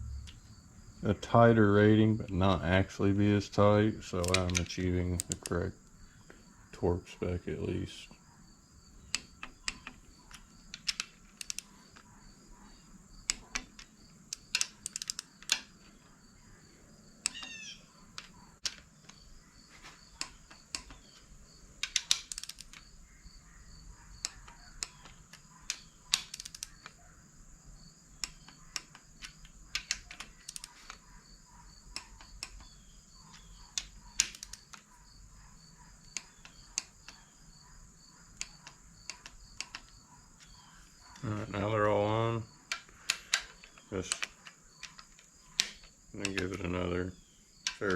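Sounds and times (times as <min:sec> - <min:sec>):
torque wrench clicking: 0:09.1 - 0:11.7, 0:13.2 - 0:15.7, 0:17.2 - 0:19.2, 0:21.8 - 0:22.9, 0:24.2 - 0:27.0, 0:28.2 - 0:31.0.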